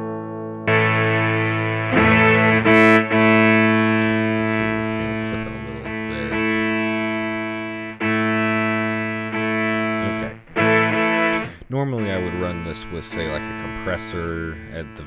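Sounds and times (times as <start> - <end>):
synth guitar sustained notes: 0.0 - 15.0.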